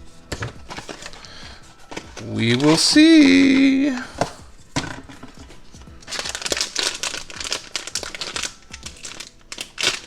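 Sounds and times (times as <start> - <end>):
packaging crinkling and tearing: 0.6 - 3.7, 6.0 - 10.0.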